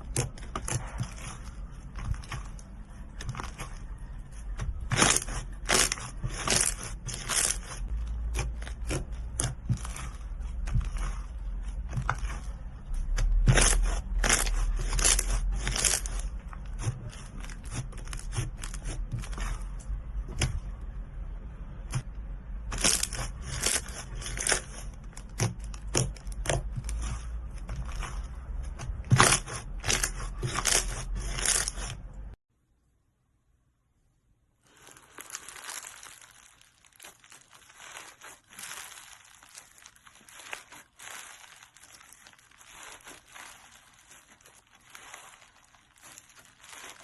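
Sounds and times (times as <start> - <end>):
slime squeezed by hand: 34.7 - 47.0.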